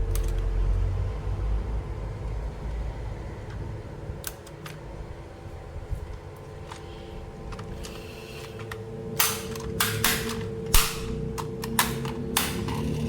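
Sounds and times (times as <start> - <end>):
steady hum: 0.0 - 13.0.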